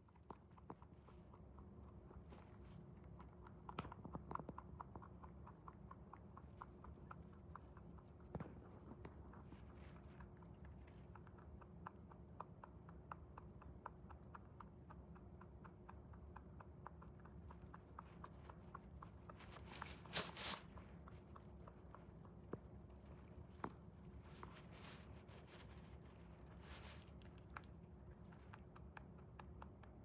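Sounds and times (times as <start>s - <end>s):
rabbit chewing food crunches: 0.0s - 30.0s
rustling: 17.9s - 28.6s.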